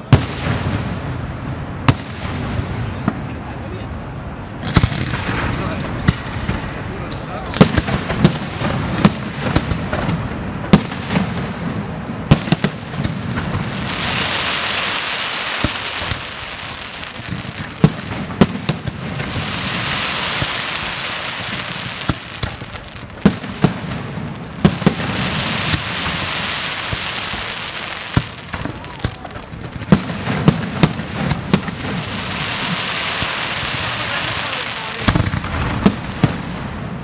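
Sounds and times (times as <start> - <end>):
crackling firework hiss: 0.0 - 37.0
firework shells bursting: 12.3 - 36.8.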